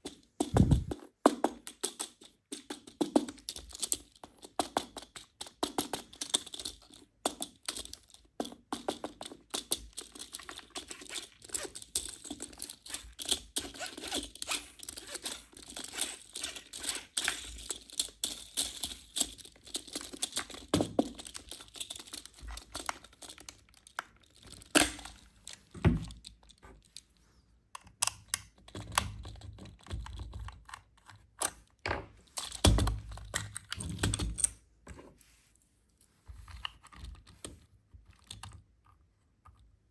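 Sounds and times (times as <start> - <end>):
plastic and cardboard crinkling: 6.0 - 27.3.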